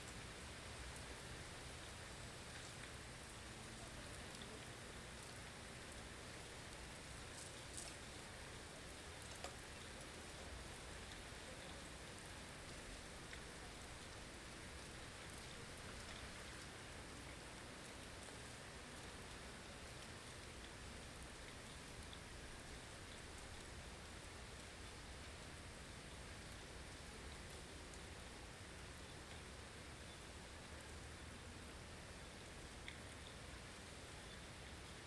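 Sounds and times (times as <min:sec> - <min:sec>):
small ticks: 0:07.3 - 0:08.2, 0:09.2 - 0:09.6, 0:32.8 - 0:33.4.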